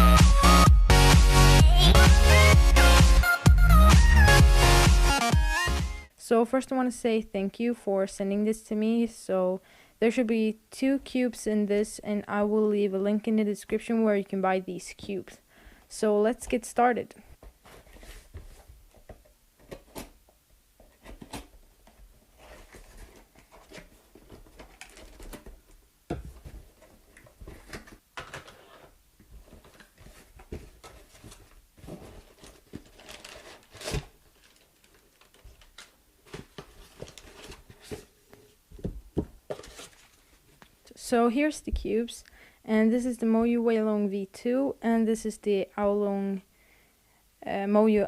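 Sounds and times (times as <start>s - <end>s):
packaging rustling and tearing: 22.3s - 25.8s, 26.4s - 38.2s, 39.6s - 40.4s.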